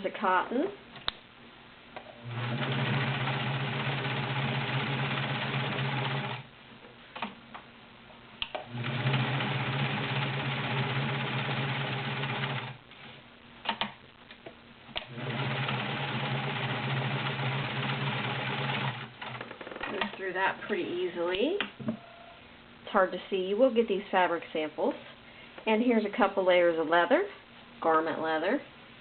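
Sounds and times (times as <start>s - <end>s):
sewing machine stitching: 2.2s - 6.4s, 8.7s - 12.8s, 15.0s - 20.1s.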